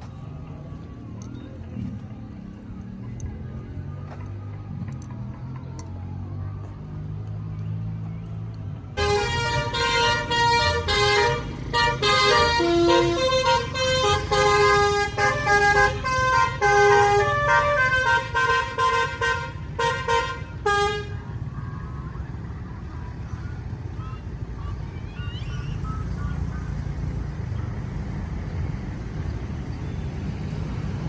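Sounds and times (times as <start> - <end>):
low engine rumble: 0.0 - 31.0
bus horn melody: 9.0 - 21.5.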